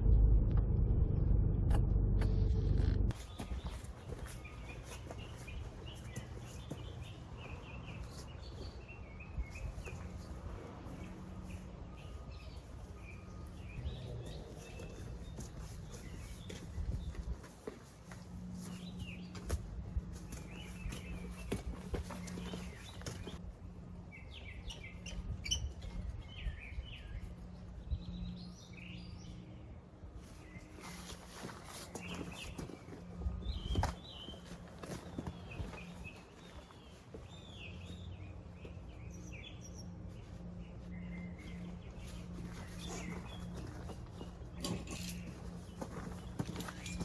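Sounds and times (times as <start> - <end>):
low steady rumble: 0.0 - 3.2
low steady hum: 0.0 - 17.4
birds chirping: 3.1 - 47.0
birds chirping and calling: 24.1 - 29.6, 33.4 - 47.0.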